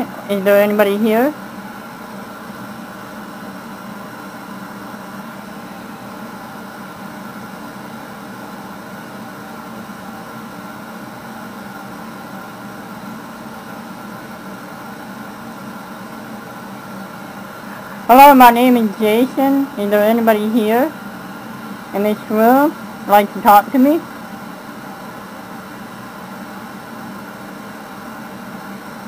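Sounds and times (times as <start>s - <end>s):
low even hum: 0.0s - 29.0s
steady background hiss: 0.0s - 29.0s.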